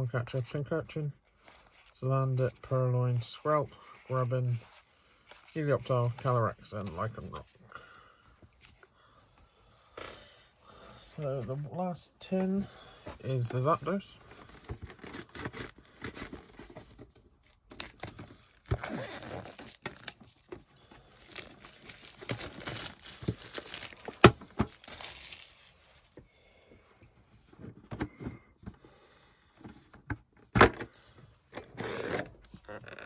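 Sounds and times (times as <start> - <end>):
plastic wrap crinkling and tearing: 17.7 - 26.1.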